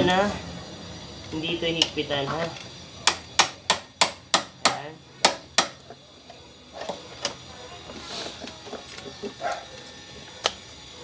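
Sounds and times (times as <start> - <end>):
hammer striking metal: 3.0 - 5.8.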